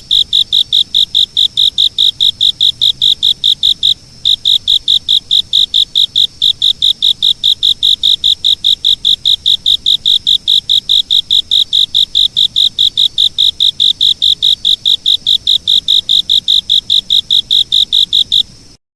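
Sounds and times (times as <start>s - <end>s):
cricket chirping: 0.0s - 18.8s.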